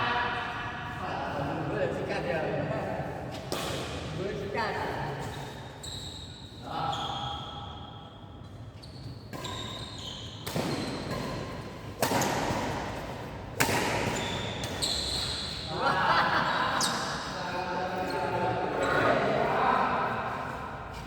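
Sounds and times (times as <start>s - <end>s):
racket hitting shuttlecock: 3.4s - 4.1s, 9.3s - 15.7s
shoe squeaks: 4.7s - 11.6s, 14.0s - 15.7s, 16.8s - 19.3s.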